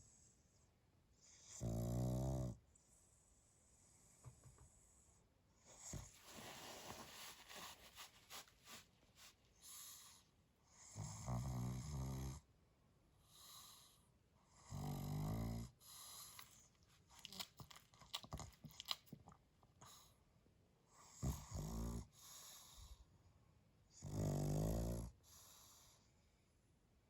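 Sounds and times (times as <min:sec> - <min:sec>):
dog snoring: 0:01.2 - 0:03.1, 0:09.7 - 0:12.5, 0:13.2 - 0:16.4, 0:20.9 - 0:23.0, 0:23.9 - 0:26.0.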